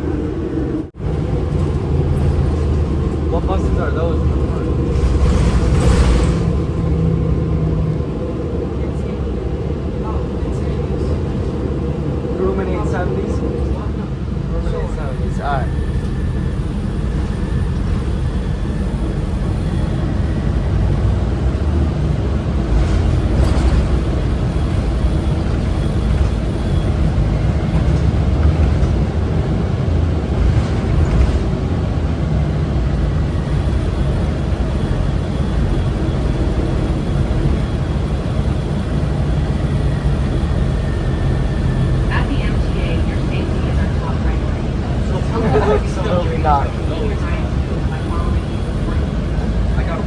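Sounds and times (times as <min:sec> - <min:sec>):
bus engine drone: 0:00.0 - 0:50.0
knocks and rattles: 0:04.5 - 0:07.0.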